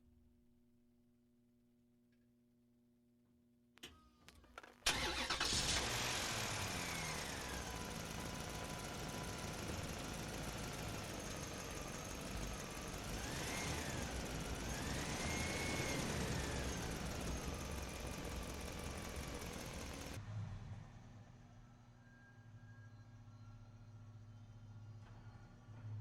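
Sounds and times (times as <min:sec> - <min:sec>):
car engine running: 0:04.9 - 0:20.2.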